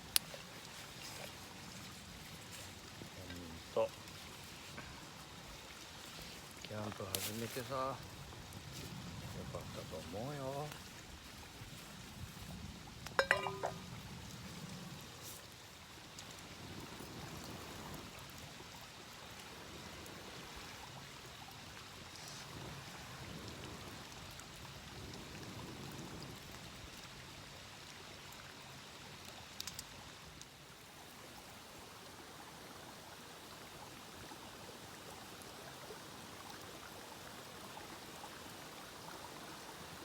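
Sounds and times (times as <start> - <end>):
stream flowing: 0.0 - 16.5, 26.9 - 40.0.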